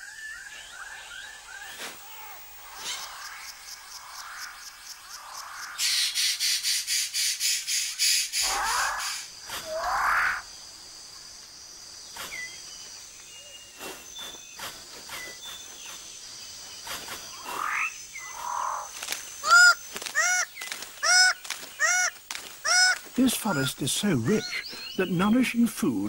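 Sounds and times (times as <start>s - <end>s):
rising sweeping bird calls: 0.0s - 10.5s
insect drone: 0.0s - 26.0s
ringing bird calls: 17.2s - 26.0s.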